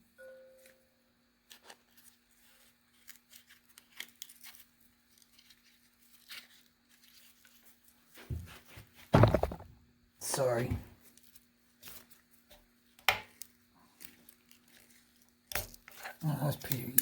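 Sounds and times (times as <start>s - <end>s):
pliers clicking and scraping metal: 15.5s - 16.0s, 16.6s - 17.0s.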